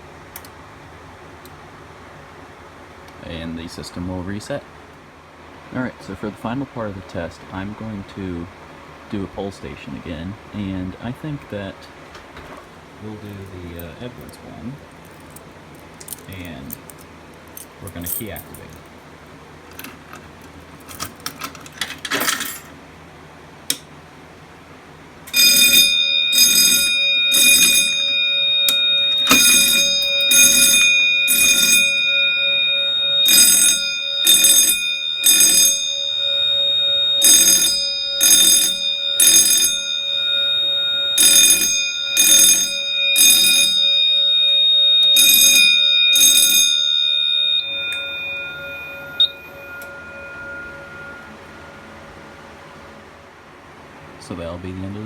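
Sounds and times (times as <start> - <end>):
alarm pull station clicks and rattle: 19.7 - 22.7, 25.3 - 40.3, 41.1 - 44.1, 45.0 - 46.8
fire alarm blasts: 25.3 - 52.6
steady high alarm tone: 25.3 - 53.6.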